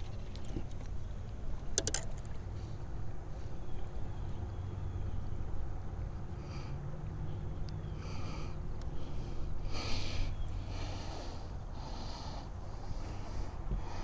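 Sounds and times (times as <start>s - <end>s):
low steady hum: 0.0s - 14.0s
person breathing hard through nose: 7.9s - 14.0s.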